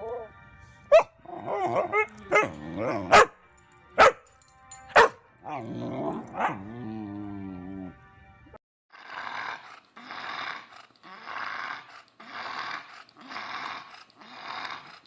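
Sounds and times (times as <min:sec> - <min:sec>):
background music: 0:00.0 - 0:08.6
dog barking: 0:00.9 - 0:01.1, 0:01.7 - 0:03.4, 0:04.0 - 0:04.2, 0:05.0 - 0:05.2, 0:06.3 - 0:06.6.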